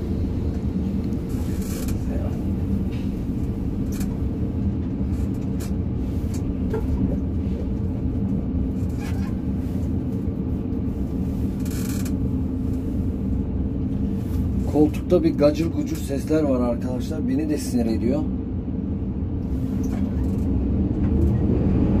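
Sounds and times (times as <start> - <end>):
excavator diesel engine running: 0.0 - 16.0
seat creaks and clicks: 0.5 - 7.3, 8.7 - 10.0, 11.4 - 12.8, 19.7 - 21.5.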